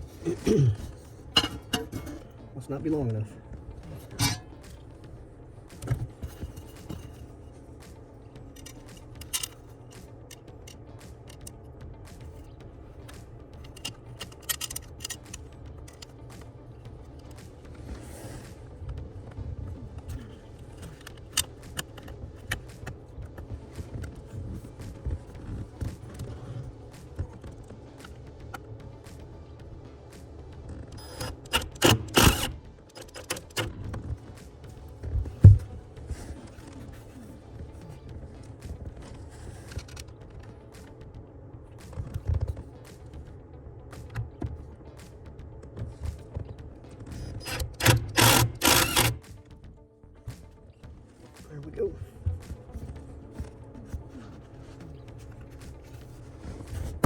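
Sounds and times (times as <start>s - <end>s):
steady low hum: 0.0s - 57.0s
tools clicking on car interior parts: 0.4s - 2.3s, 3.0s - 5.0s, 5.7s - 11.6s, 13.0s - 16.5s, 20.0s - 28.7s, 30.7s - 34.4s, 35.0s - 37.1s, 45.7s - 49.4s
small metallic clicks and taps: 1.4s - 2.4s, 5.7s - 12.4s, 13.0s - 16.6s, 30.9s - 36.8s.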